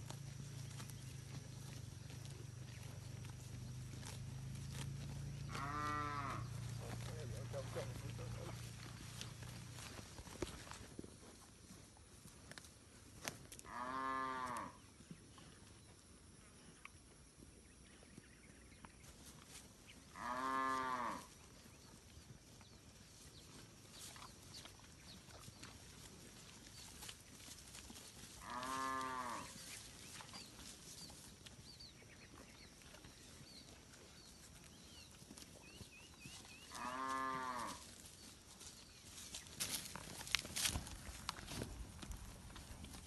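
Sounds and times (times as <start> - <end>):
cattle mooing: 5.3 - 8.6, 13.7 - 14.8, 20.1 - 21.3, 28.4 - 29.6, 36.7 - 37.8.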